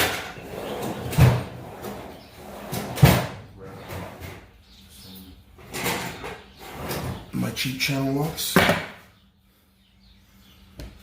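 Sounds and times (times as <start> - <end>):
hard objects clunking and knocking: 8.6 - 9.0.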